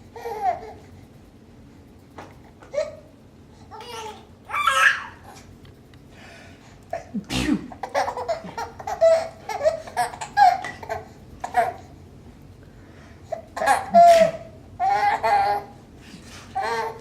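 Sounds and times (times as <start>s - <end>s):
baby laughing: 0.2s - 0.8s, 3.7s - 5.4s, 7.7s - 11.9s, 13.3s - 15.8s, 16.6s - 17.0s
person sneezing: 7.1s - 7.8s, 14.0s - 14.5s.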